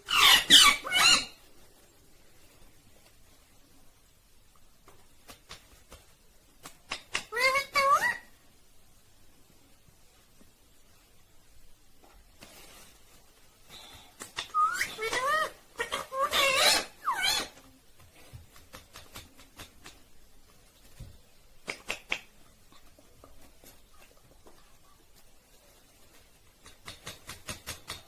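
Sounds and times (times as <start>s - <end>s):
parrot warbling calls: 0.1s - 1.4s, 7.3s - 8.3s, 14.5s - 17.6s.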